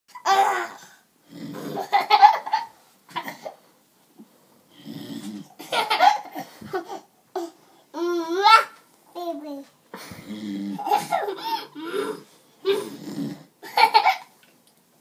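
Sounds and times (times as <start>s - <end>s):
baby laughing: 1.8s - 3.5s, 5.6s - 7.5s, 10.8s - 11.9s, 13.6s - 14.3s
man snoring: 11.8s - 13.5s.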